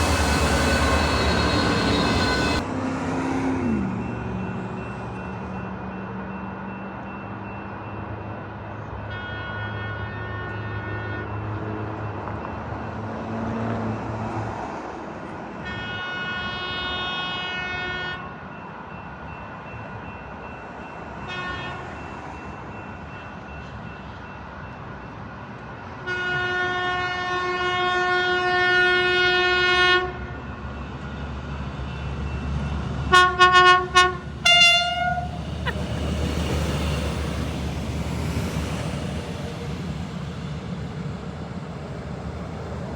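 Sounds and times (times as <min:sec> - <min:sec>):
diesel engine running: 0:00.0 - 0:02.6, 0:34.2 - 0:42.9
locomotive air horn blasts: 0:00.0 - 0:02.6, 0:26.1 - 0:30.2, 0:33.1 - 0:36.1.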